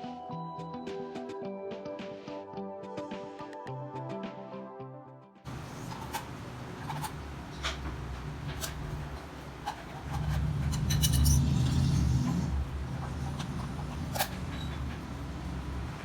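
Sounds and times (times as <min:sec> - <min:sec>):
air bike fan whirring: 0:05.5 - 0:16.0.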